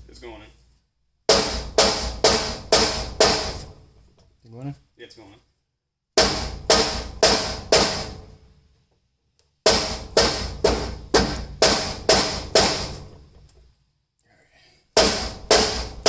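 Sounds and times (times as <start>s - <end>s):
hammer striking steel: 1.3s - 3.7s, 6.2s - 8.3s, 9.7s - 13.1s, 15.0s - 16.0s.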